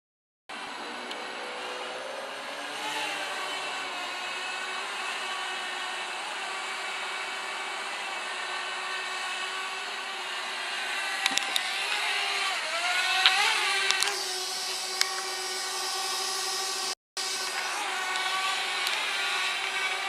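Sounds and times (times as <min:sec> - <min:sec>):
drone propellers whining: 0:00.5 - 0:20.0.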